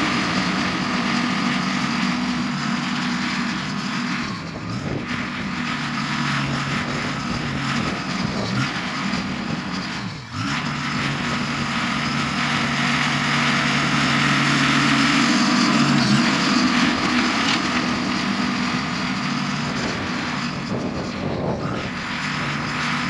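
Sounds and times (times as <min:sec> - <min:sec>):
heavy diesel engine running: 0:00.0 - 0:23.0.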